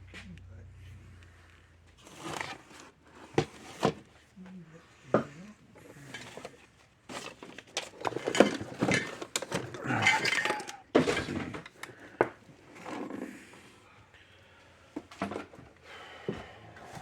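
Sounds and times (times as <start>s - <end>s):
tools clinking on a workbench: 7.1s - 12.4s.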